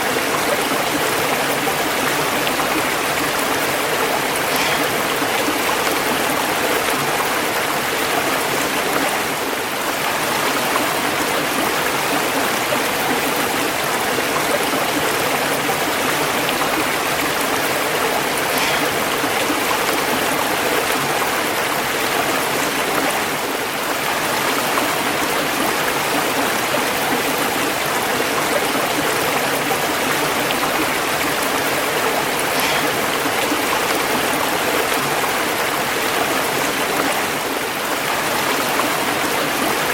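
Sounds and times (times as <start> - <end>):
stream water rushing: 0.0 - 39.9.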